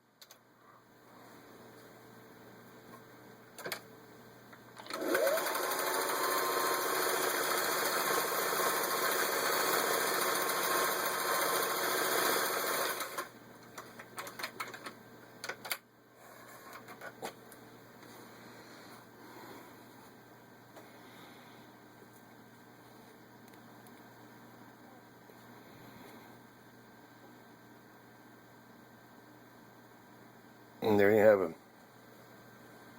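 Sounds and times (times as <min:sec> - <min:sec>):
sewing machine motor whining: 0:04.8 - 0:13.3.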